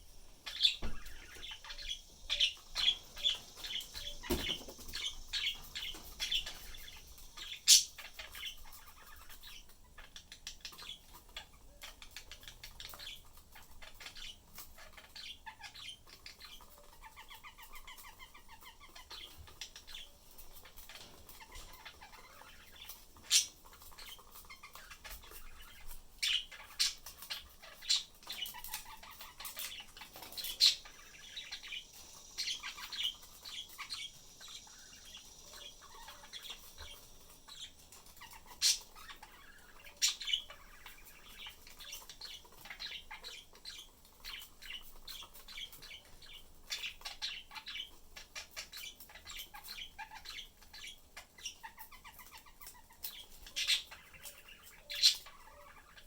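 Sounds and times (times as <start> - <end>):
high bird chirps: 0.0 - 9.6
budgerigars chattering: 0.0 - 56.0.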